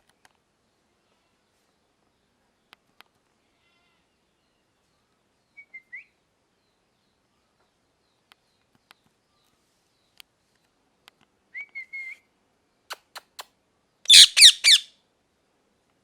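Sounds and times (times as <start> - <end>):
parrot whistled call: 14.1 - 14.8.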